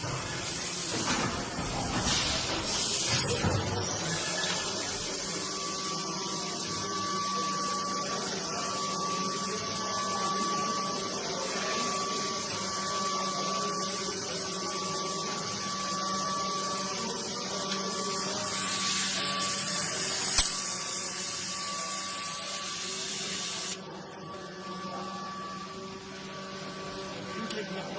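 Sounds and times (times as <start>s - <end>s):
high machine whine: 0.0s - 27.9s
sharp click: 20.4s - 20.6s.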